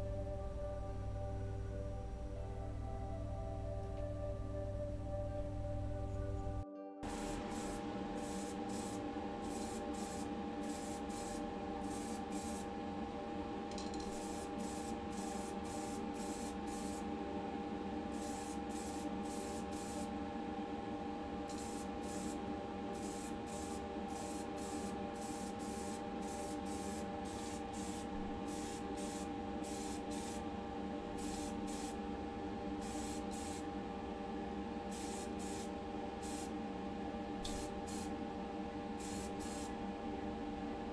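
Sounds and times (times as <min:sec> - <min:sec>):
steady hum: 0:00.0 - 0:40.9
spray paint hissing bursts: 0:07.1 - 0:12.6, 0:14.1 - 0:17.0, 0:21.5 - 0:22.4, 0:23.0 - 0:30.4, 0:31.2 - 0:32.0, 0:32.8 - 0:33.6, 0:34.9 - 0:36.5, 0:37.4 - 0:38.1, 0:39.0 - 0:39.7.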